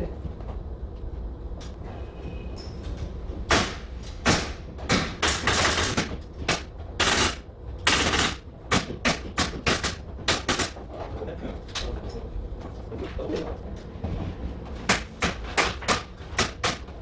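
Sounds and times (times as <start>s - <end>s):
nail gun shots: 3.5s - 10.8s, 14.9s - 16.9s.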